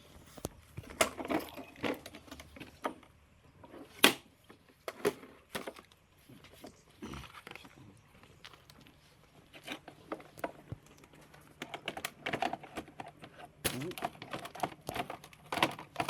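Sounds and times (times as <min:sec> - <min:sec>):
parts clicking and knocking: 0:08.4 - 0:16.0.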